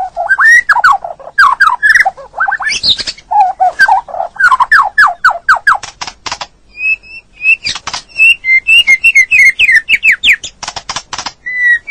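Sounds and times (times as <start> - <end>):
bird whistling song: 0.0 - 5.8, 6.7 - 10.6, 11.4 - 11.9
bird sharp clicking notes: 3.8 - 6.6, 7.5 - 11.4.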